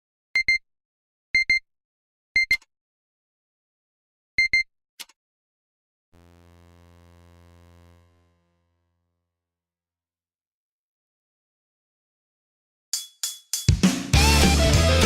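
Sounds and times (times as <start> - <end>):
low buzzy synthesizer tone: 6.2 - 9.2.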